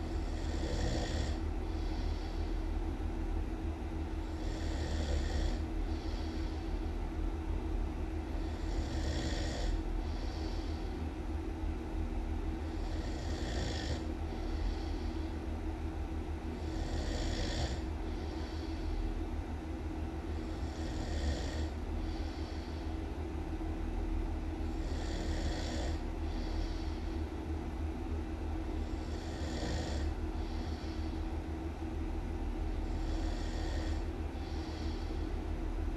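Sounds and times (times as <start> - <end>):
steady low rumble: 0.0 - 0.6, 1.3 - 9.0, 9.7 - 13.2, 14.0 - 16.9, 17.7 - 21.0, 21.6 - 25.0, 25.9 - 29.4, 30.0 - 35.9
loud human snoring: 0.0 - 2.4, 4.2 - 6.6, 8.4 - 10.8, 12.7 - 15.1, 16.6 - 18.7, 20.4 - 22.6, 24.7 - 26.9, 28.8 - 31.0, 32.8 - 35.1.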